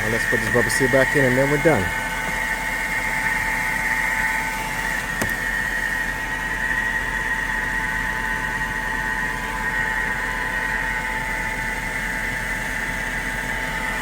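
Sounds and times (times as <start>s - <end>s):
car engine idling: 0.0s - 5.9s
high-pitched whine: 0.0s - 14.0s.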